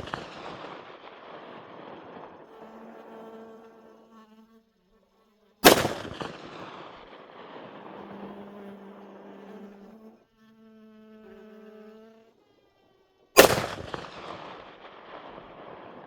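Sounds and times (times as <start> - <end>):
pistol shot with echo: 0.0 - 2.4, 5.6 - 8.0, 13.4 - 16.0
flies buzzing: 0.0 - 16.0.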